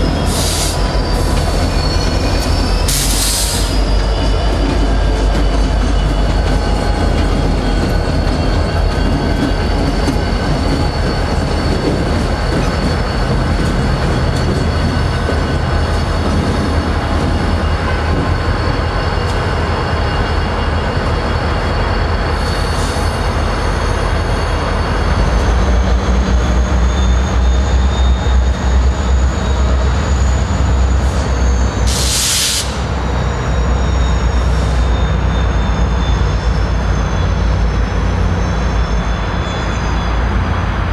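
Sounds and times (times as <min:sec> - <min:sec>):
diesel locomotive engine drone: 0:00.0 - 0:40.9
high-pitched wheel squeal: 0:00.0 - 0:40.9
loud air hiss: 0:31.9 - 0:32.9.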